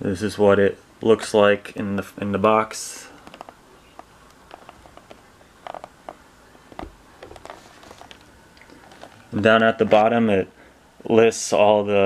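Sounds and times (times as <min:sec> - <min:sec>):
cardboard box being handled: 0:06.8 - 0:09.3.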